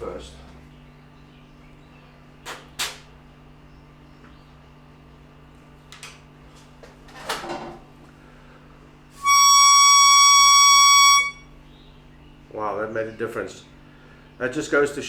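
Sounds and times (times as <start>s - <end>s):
reed sounding high note: 9.2s - 11.5s.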